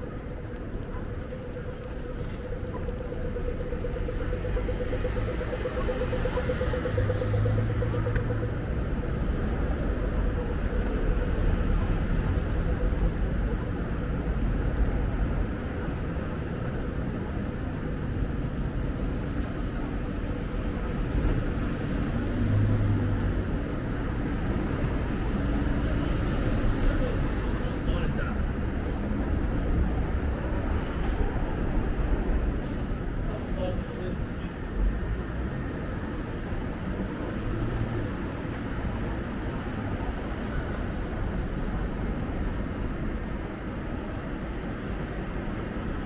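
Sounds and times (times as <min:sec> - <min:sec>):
city street traffic: 0:00.0 - 0:46.0.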